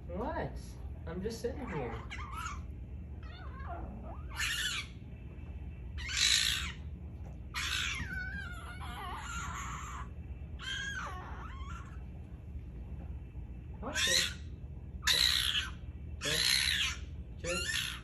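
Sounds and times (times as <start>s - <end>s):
animal squawking cries: 1.6s - 5.0s, 6.0s - 6.9s, 7.5s - 12.1s, 13.8s - 18.0s.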